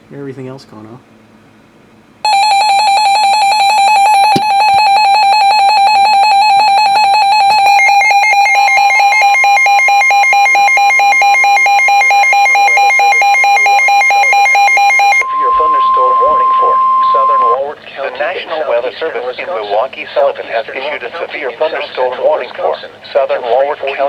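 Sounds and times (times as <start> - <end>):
steady high warning tone: 2.2 - 19.5
pulsing electronic alarm beep: 2.3 - 17.6.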